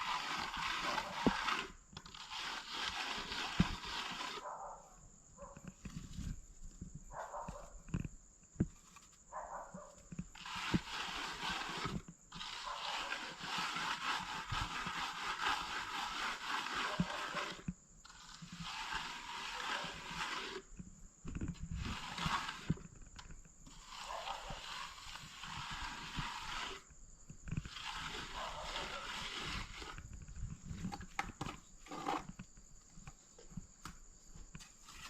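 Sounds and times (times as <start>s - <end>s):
gritty scraping of sand and stones: 0.0s - 4.5s, 5.7s - 6.9s, 10.2s - 32.5s.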